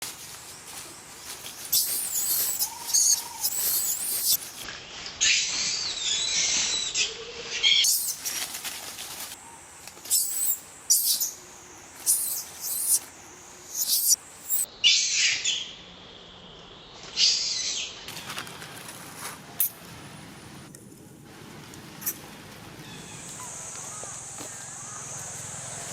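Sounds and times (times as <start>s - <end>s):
monkeys squealing and screaming: 1.6s - 4.6s, 6.0s - 8.4s, 10.1s - 11.4s, 12.0s - 13.0s, 13.7s - 14.7s.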